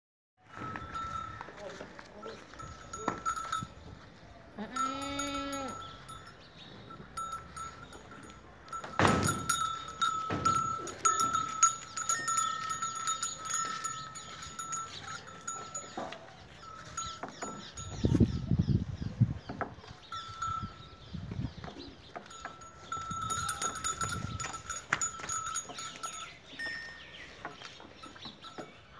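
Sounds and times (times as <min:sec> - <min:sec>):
bells ringing: 0:00.5 - 0:18.5, 0:20.0 - 0:28.9
goat bleating: 0:04.6 - 0:05.9.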